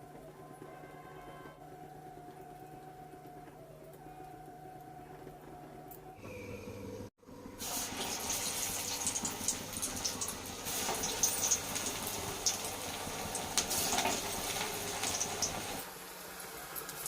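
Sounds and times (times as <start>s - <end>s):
fritters sizzling in hot oil: 7.6s - 17.0s.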